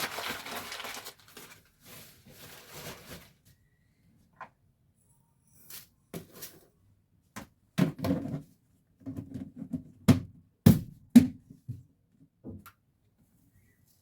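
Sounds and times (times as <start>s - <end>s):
household items knocking and clattering: 7.4s - 11.9s.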